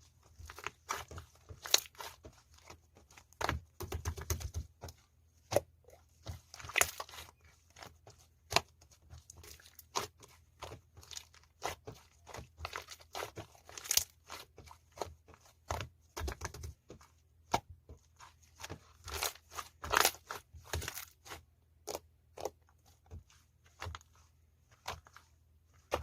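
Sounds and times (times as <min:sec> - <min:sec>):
hands crunching crinkly material: 0:00.2 - 0:03.5, 0:08.6 - 0:15.5.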